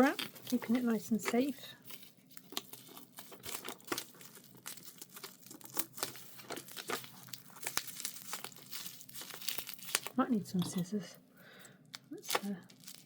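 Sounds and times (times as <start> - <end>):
bubble wrap crinkling: 0.0 - 10.4, 12.0 - 13.0.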